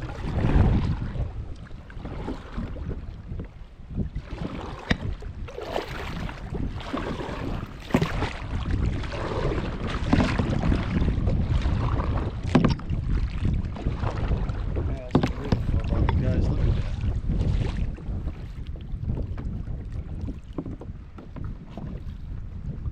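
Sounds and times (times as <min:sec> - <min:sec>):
water splashing around paddle board: 0:00.0 - 0:22.9
wind rumbling on microphone: 0:00.0 - 0:22.9
sharp splashes: 0:04.6 - 0:10.9.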